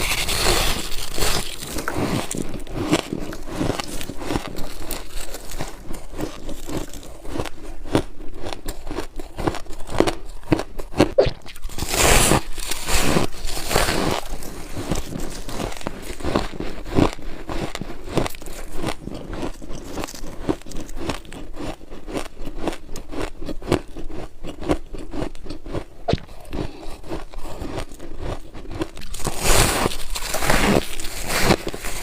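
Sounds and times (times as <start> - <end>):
chewing ice crunches: 0.0 - 32.0
crisp scraping crunch: 0.0 - 32.0.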